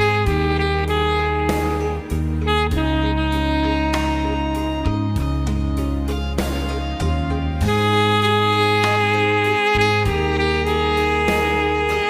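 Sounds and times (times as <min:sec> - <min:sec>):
bass line: 0:00.0 - 0:12.0
saxophone-like lead: 0:00.0 - 0:12.0.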